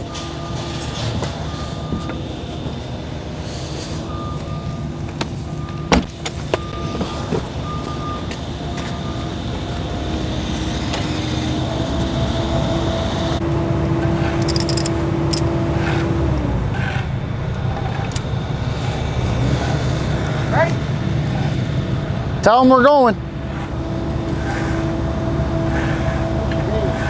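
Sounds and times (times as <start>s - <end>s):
diesel engine running: 0.0s - 27.0s
backup alarm beeping: 4.0s - 9.7s
sharp metallic clanks: 14.4s - 15.5s.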